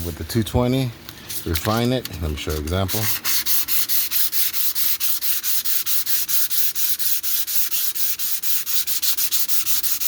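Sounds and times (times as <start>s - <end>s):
sandpaper scratching by hand: 2.5s - 10.0s.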